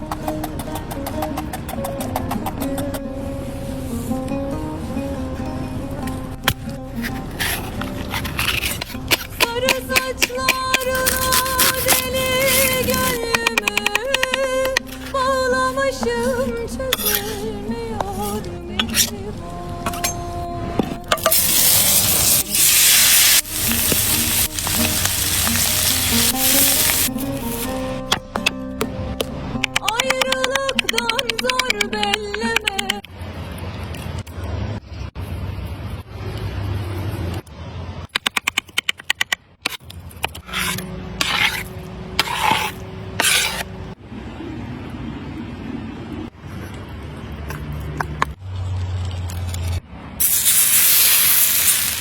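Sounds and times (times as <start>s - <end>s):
rasping scrapes: 7.0s - 15.2s, 16.2s - 19.2s, 40.2s - 43.7s
sharp clicks: 13.3s - 14.8s, 29.6s - 33.1s
meat sizzling in hot oil: 21.3s - 27.1s, 50.2s - 52.0s.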